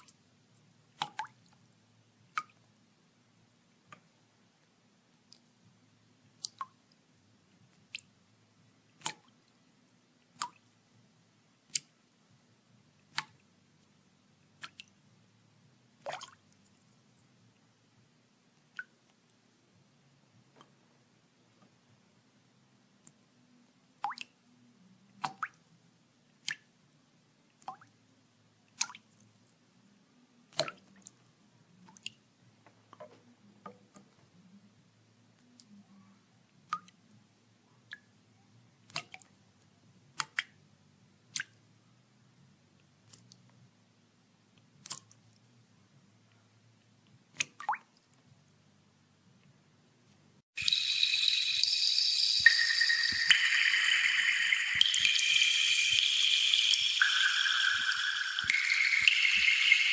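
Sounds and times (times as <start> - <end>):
water drops falling: 50.6 - 59.9.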